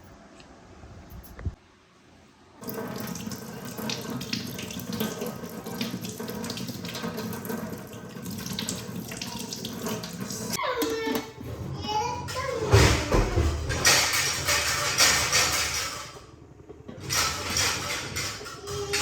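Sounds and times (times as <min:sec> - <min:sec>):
tap water running into sink: 0:02.6 - 0:10.6.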